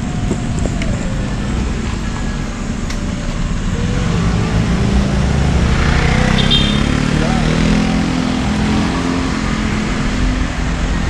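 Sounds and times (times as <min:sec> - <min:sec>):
wind rumble on microphone: 0:00.0 - 0:06.4
street traffic: 0:00.0 - 0:11.0
vehicle engine: 0:00.0 - 0:11.0.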